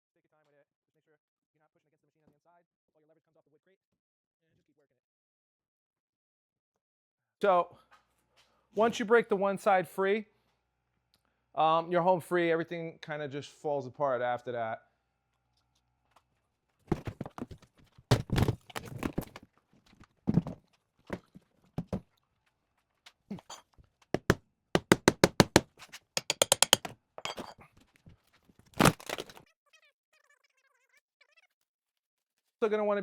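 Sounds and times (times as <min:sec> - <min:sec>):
wooden crate being pried apart: 0:16.9 - 0:19.4, 0:28.8 - 0:29.4
heavy knock: 0:24.2 - 0:25.6
sharp hammer strikes: 0:24.2 - 0:27.5.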